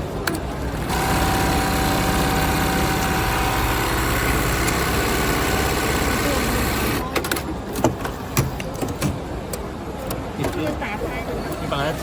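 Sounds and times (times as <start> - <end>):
sewing machine running: 0.6 - 7.0.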